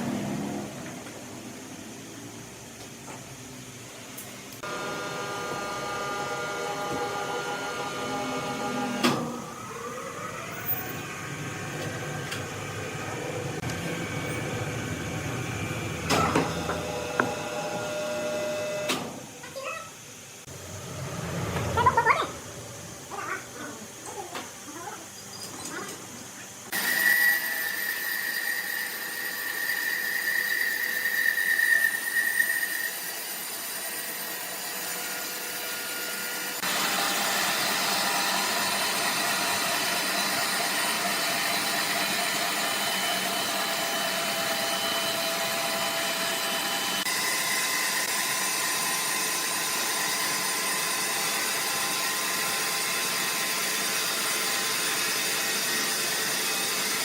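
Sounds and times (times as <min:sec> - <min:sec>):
sawmill machinery humming: 0:04.4 - 0:19.4, 0:20.0 - 0:25.2, 0:25.8 - 0:57.0
high machine whine: 0:04.6 - 0:19.3, 0:20.0 - 0:34.5.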